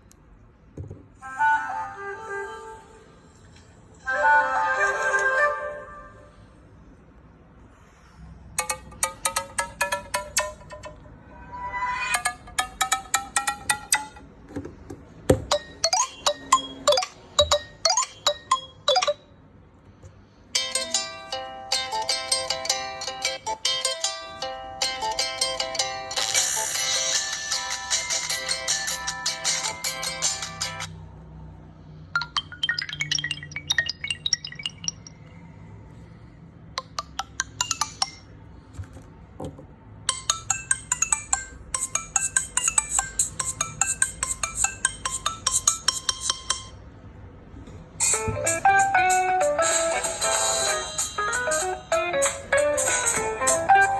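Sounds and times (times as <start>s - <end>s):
ringtone with glassy clinking notes: 15.5s - 19.3s, 32.2s - 35.6s
mobile phone ringtones: 32.2s - 35.6s.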